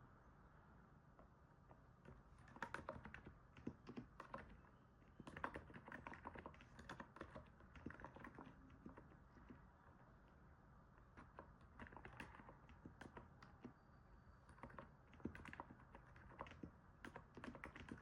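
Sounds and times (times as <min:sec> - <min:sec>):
keyboard typing: 0:02.0 - 0:09.7, 0:11.0 - 0:13.8, 0:14.4 - 0:18.0.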